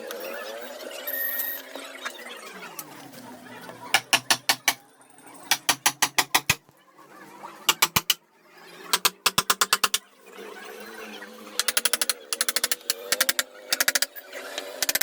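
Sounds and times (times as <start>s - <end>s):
mallet tapping chisel: 4.0s - 4.8s, 5.5s - 6.6s, 7.7s - 8.2s, 9.0s - 10.0s.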